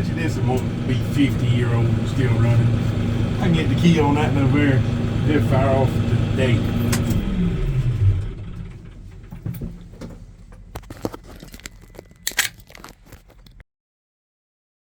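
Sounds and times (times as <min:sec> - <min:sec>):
vehicle engine shutting off: 0:00.0 - 0:13.6
keys jingling: 0:10.8 - 0:13.6.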